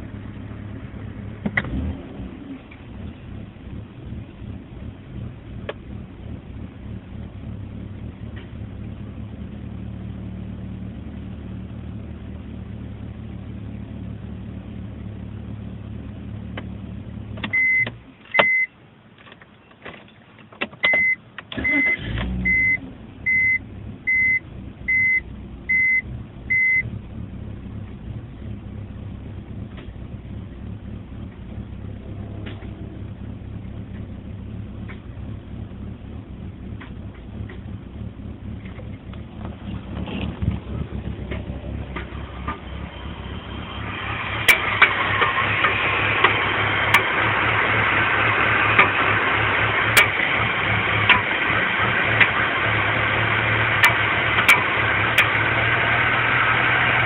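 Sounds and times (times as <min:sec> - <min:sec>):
car chime beeping: 0:17.5 - 0:18.8, 0:20.8 - 0:26.9
short beeps: 0:17.5 - 0:18.8, 0:20.8 - 0:26.9
car engine idling roughly: 0:29.3 - 0:57.0.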